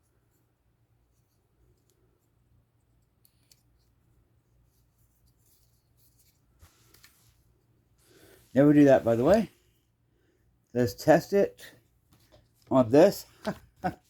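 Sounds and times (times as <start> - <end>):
handling clicks and rubs: 1.0 - 7.7.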